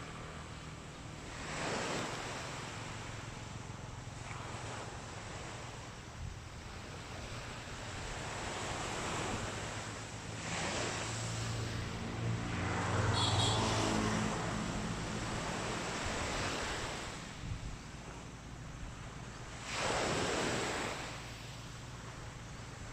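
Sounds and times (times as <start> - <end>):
waves washing onto beach: 0.0 - 22.9
motor engine hum: 2.2 - 19.6.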